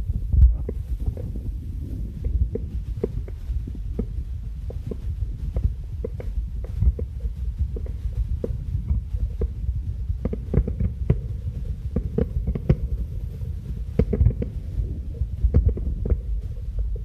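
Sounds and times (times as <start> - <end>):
fireworks bursting: 0.0 - 17.0.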